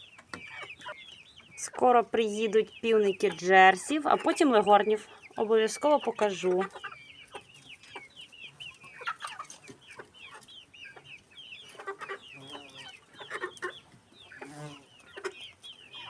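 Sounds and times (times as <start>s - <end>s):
chickens clucking: 0.0s - 16.0s
chicks peeping: 0.0s - 16.0s.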